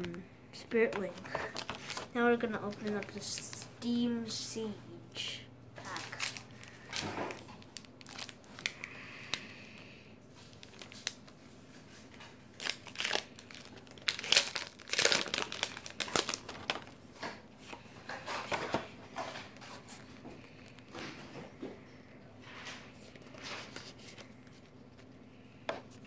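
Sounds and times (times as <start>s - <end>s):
foil wrapper crinkling and tearing: 1.4s - 2.2s, 5.8s - 9.5s, 10.4s - 17.4s.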